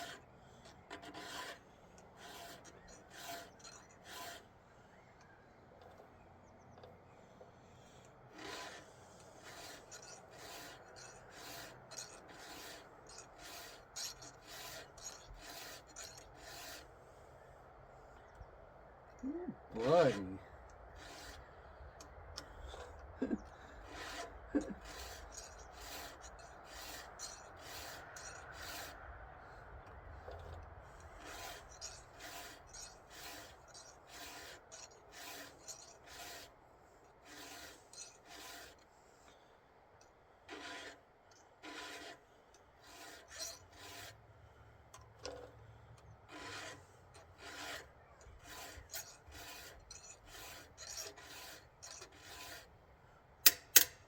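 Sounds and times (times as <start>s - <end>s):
file rasping on chainsaw chain: 0.0s - 4.6s, 7.3s - 17.2s, 19.7s - 29.1s, 29.7s - 39.5s, 40.4s - 54.0s
sharp click: 53.5s - 54.0s.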